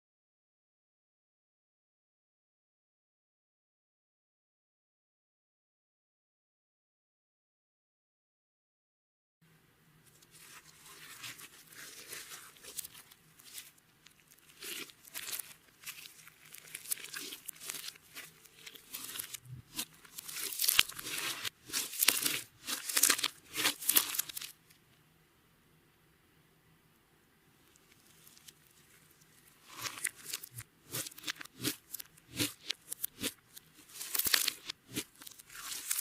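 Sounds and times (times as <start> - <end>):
slime crackling and popping: 10.3 - 24.6, 29.6 - 36.0.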